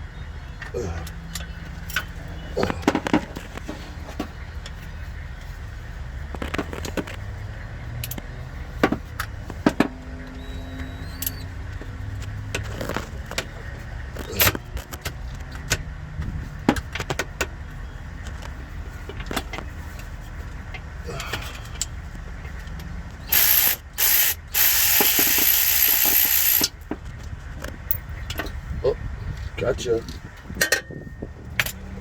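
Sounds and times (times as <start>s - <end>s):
metallic clicks of hand tools: 23.3s - 26.7s.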